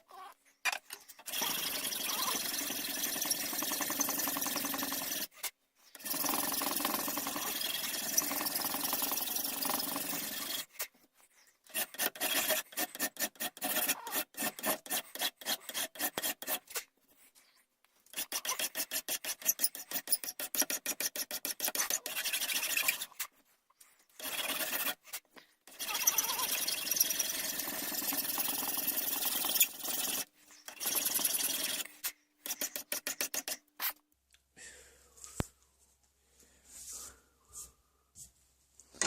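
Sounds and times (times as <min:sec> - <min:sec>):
rasp filing wood: 0:01.2 - 0:10.9, 0:11.7 - 0:16.9, 0:18.1 - 0:23.3, 0:24.2 - 0:34.0.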